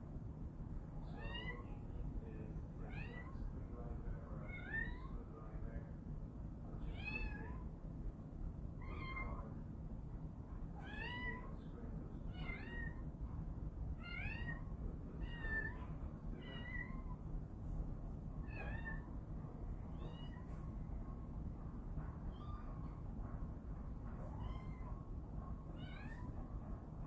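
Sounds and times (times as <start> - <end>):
low steady background rumble: 0.0 - 27.0
kitten meowing: 1.1 - 1.8, 4.4 - 5.2, 8.8 - 9.5, 10.8 - 11.5, 12.3 - 13.0, 14.0 - 17.2, 18.4 - 19.1, 19.9 - 20.5, 22.3 - 22.8, 24.3 - 25.0, 25.8 - 26.3.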